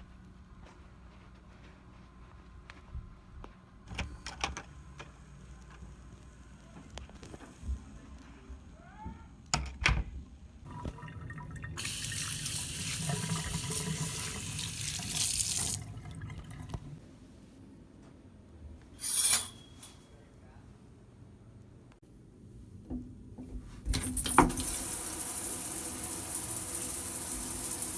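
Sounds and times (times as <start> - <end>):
water running: 10.6 - 17.0, 23.9 - 27.9.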